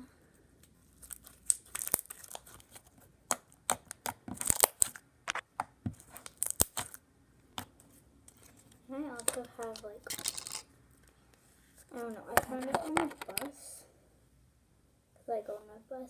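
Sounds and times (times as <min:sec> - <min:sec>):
slime squished by hand: 0:05.6 - 0:07.0.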